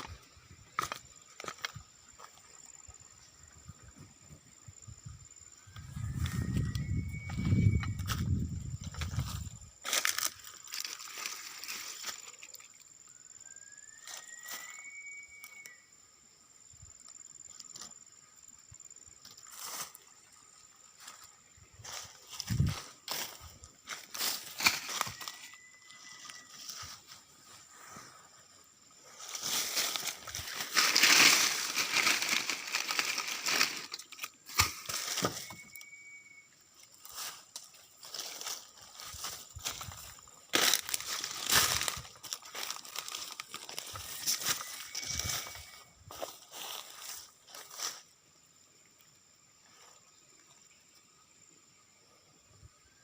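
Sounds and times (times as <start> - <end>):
night insects droning: 0.0 - 53.0
faint rising whistle-like call: 6.0 - 8.0, 13.4 - 16.0, 25.0 - 26.8, 35.1 - 36.6, 43.9 - 46.0
rustling and crunching: 6.2 - 12.6, 21.8 - 25.5, 29.1 - 35.8, 36.9 - 48.0.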